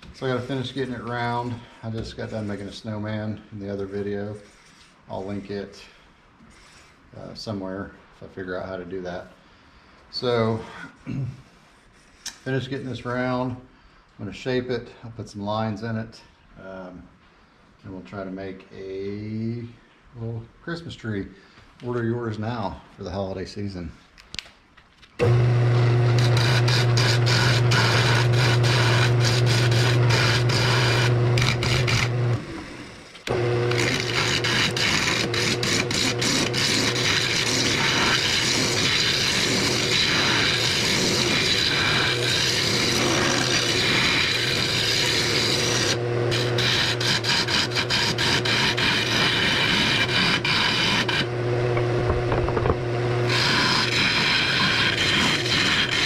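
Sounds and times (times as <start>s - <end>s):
turning tool cutting wood: 25.2s - 56.0s
wood lathe motor hum: 25.2s - 56.0s.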